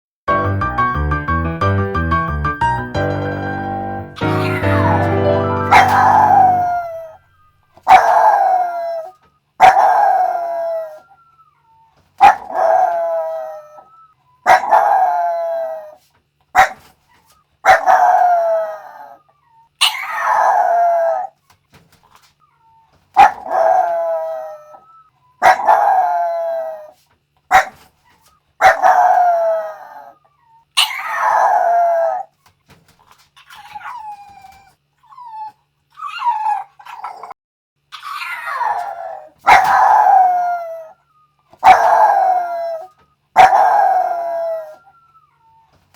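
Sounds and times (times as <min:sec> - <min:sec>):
dog howling: 0:04.3 - 0:07.3, 0:07.9 - 0:16.0, 0:17.7 - 0:21.4, 0:23.2 - 0:26.9, 0:28.6 - 0:32.3, 0:38.0 - 0:41.0, 0:41.6 - 0:45.6.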